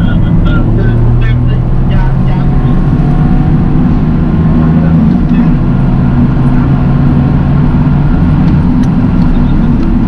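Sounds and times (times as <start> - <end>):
car engine running: 0.0 - 10.0
road noise: 0.0 - 10.0.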